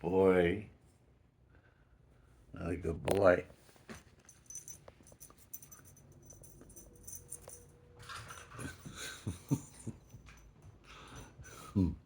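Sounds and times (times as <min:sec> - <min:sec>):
dog collar tags jingling: 0:04.2 - 0:11.3.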